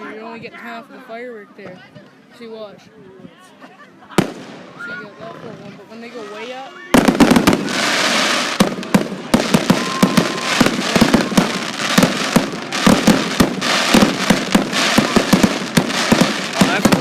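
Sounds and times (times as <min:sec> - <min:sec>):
fireworks bangs and crackling pops: 0:04.2 - 0:04.8, 0:06.9 - 0:17.0.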